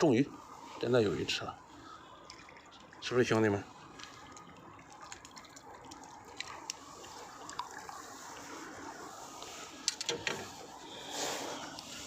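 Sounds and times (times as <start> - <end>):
water splashing and dripping: 1.6 - 11.0.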